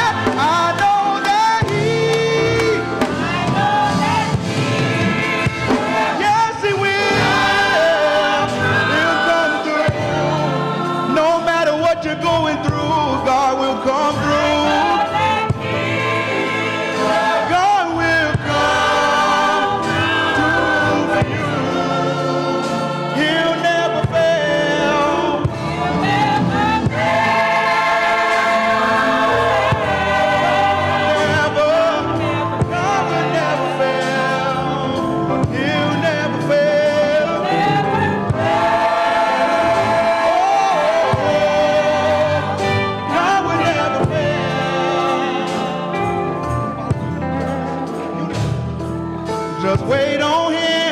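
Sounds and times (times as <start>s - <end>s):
gospel choir singing: 0.0s - 50.9s.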